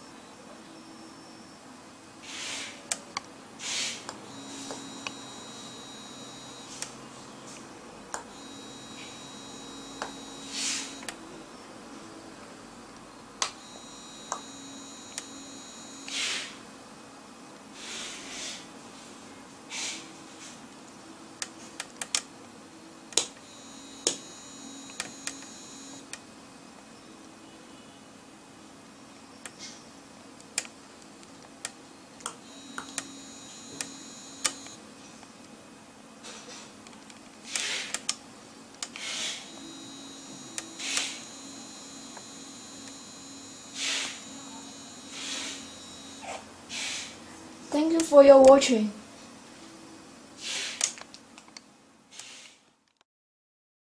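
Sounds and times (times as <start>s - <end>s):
short hissing puff: 2.2s - 2.8s, 3.6s - 4.1s, 16.1s - 16.6s, 17.8s - 18.7s, 19.7s - 20.1s, 37.5s - 38.0s, 39.0s - 39.5s, 43.8s - 44.2s, 46.7s - 47.2s, 50.4s - 51.0s, 52.1s - 52.6s
high electronic tone: 4.3s - 6.9s, 8.3s - 11.6s, 13.4s - 16.5s, 23.4s - 26.2s, 32.4s - 34.8s, 39.0s - 46.3s
low buzz: 4.3s - 6.9s, 8.3s - 11.6s, 13.4s - 16.2s, 23.4s - 26.2s, 32.4s - 34.8s, 39.4s - 46.2s
high alert tone: 8.3s - 11.1s, 39.4s - 46.3s.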